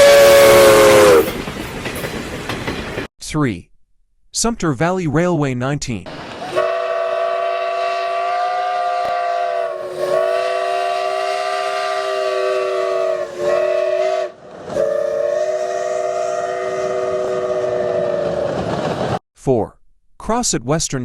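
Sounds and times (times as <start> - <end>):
steam whistle blowing a chord: 0.0 - 1.3, 6.5 - 18.5.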